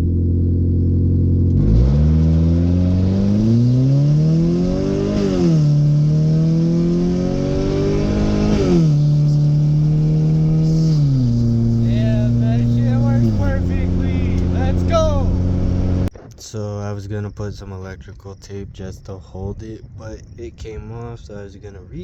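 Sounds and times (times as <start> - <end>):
car engine accelerating hard: 0.0 - 16.1.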